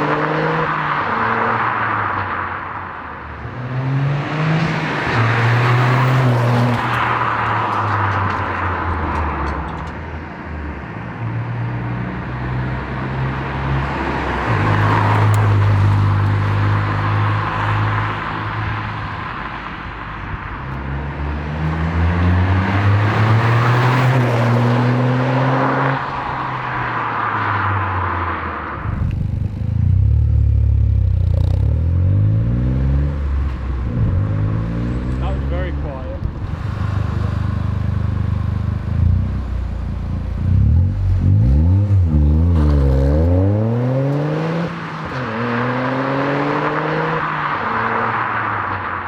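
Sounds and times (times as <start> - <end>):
car engine accelerating: 27.6 - 48.8.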